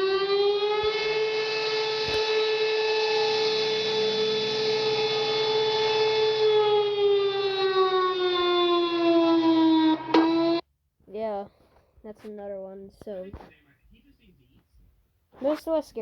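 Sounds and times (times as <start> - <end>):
warning siren winding down: 0.0 - 10.6.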